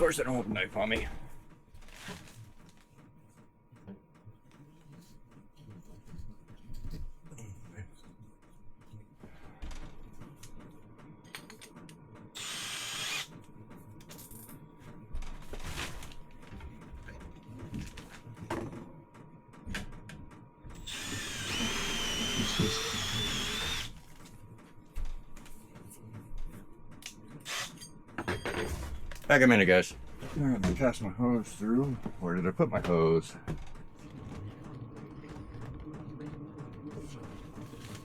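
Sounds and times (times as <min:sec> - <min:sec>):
small motorised tool whining: 0:12.4 - 0:13.3, 0:20.8 - 0:24.2.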